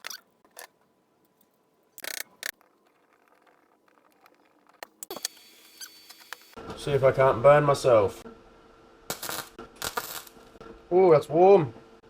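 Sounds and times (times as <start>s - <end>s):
small objects clicking and knocking: 2.0s - 6.6s.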